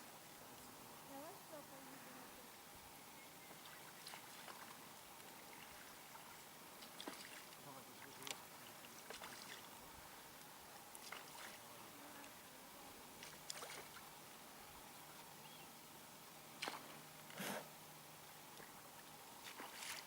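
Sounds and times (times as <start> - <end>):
oars splashing in water: 3.5 - 9.8, 11.0 - 11.6, 13.2 - 14.1, 19.4 - 20.0.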